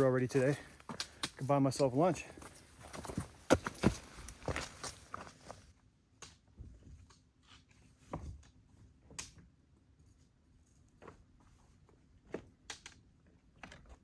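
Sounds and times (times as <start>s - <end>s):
footsteps on loose rock: 0.0s - 5.6s.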